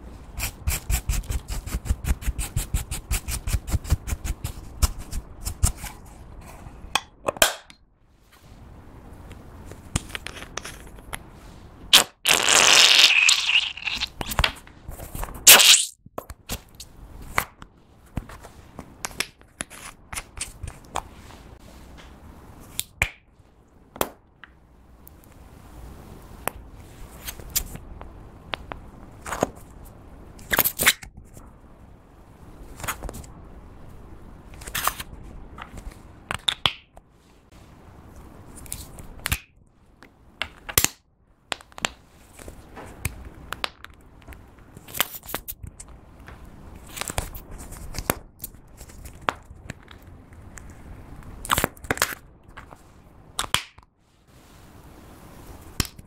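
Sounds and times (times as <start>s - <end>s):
slime squished by hand: 11.9s - 14.4s, 15.4s - 15.9s.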